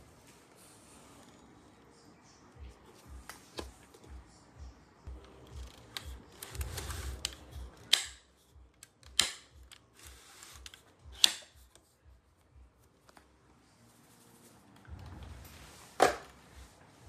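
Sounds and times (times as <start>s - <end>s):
sharp plastic clicks: 8.8s - 9.9s.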